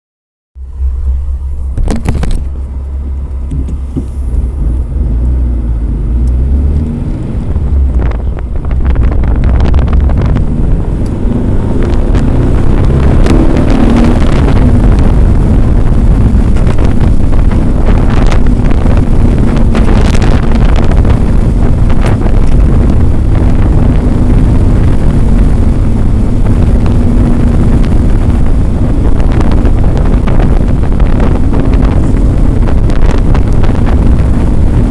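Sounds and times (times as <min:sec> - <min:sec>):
car driving rumble: 0:00.6 - 0:34.9
wind noise on microphone: 0:00.7 - 0:34.9.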